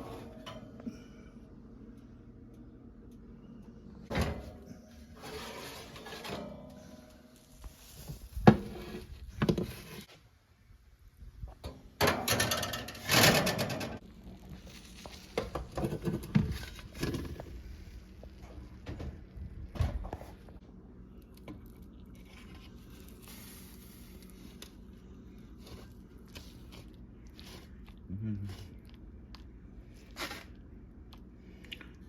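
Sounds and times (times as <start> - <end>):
clatter of pans: 12.0 - 14.0.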